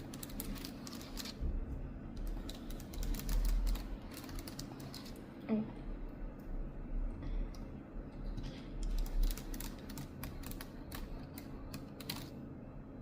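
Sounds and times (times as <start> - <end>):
typing on keyboard with fingernails: 2.2 - 5.1, 8.8 - 12.3.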